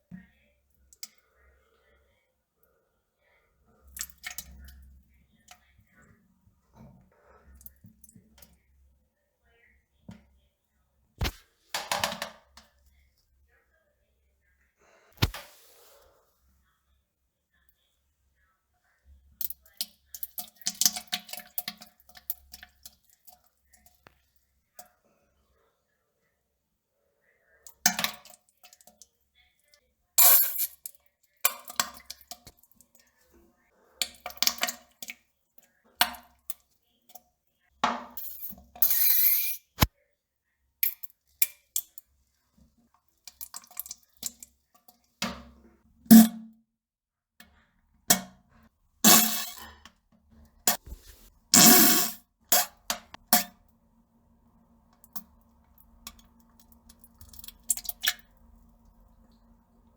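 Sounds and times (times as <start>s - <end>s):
plopping in toilet: 37.8s - 38.3s, 45.2s - 46.6s, 49.0s - 49.8s.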